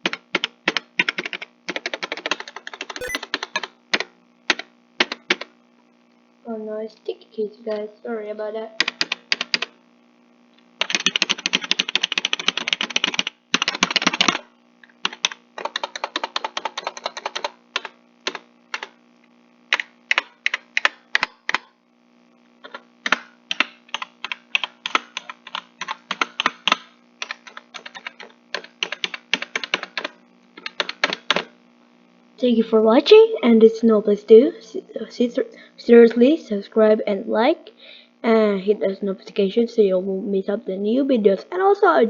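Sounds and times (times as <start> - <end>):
keyboard keys clicking: 23.5 - 31.4.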